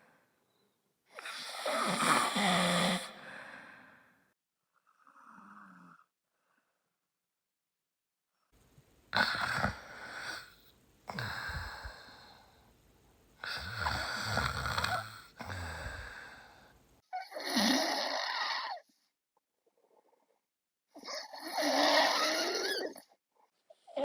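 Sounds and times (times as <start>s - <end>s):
person snoring: 1.2s - 3.9s, 4.8s - 6.1s, 9.1s - 12.5s, 13.4s - 16.6s, 21.0s - 23.0s.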